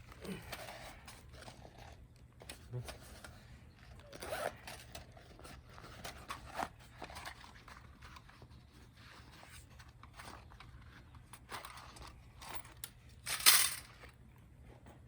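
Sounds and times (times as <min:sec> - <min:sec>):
handling clicks knocks and scrapes: 0:00.0 - 0:15.0.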